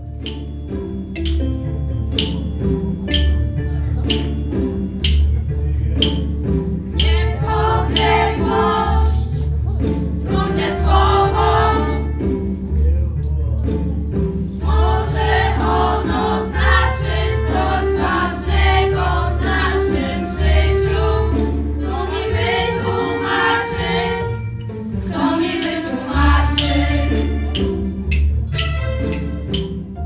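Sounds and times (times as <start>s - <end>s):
group of voices singing: 6.9s - 12.4s, 14.6s - 28.2s.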